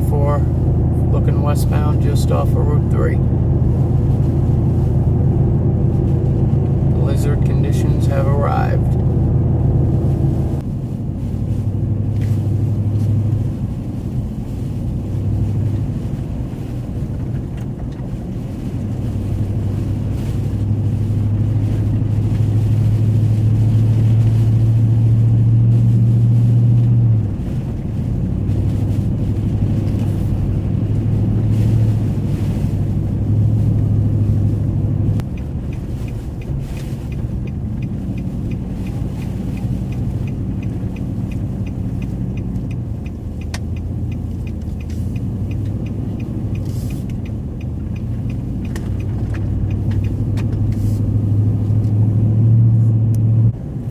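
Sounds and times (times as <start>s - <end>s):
vehicle engine and tyre hum: 0.0s - 53.9s.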